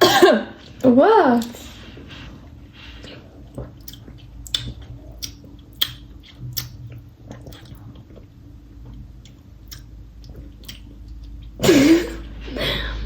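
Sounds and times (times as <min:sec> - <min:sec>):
quiet low hum: 0:00.0 - 0:13.0
wet mouth clicks and lip smacks: 0:03.8 - 0:07.9, 0:09.2 - 0:11.4.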